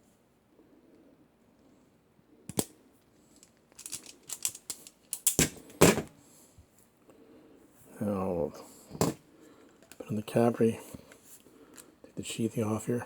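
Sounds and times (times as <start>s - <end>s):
cutter jaws snapping through wire: 3.8s - 6.1s.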